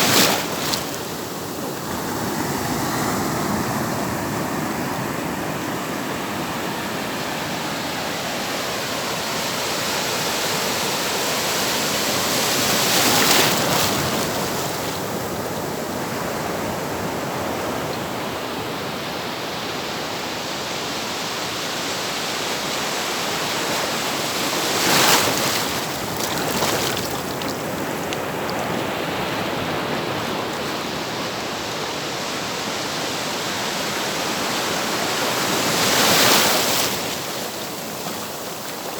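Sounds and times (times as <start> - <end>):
surf rushing onto shore: 0.0 - 6.5, 23.4 - 32.5
waves breaking: 0.0 - 20.4, 22.1 - 38.9.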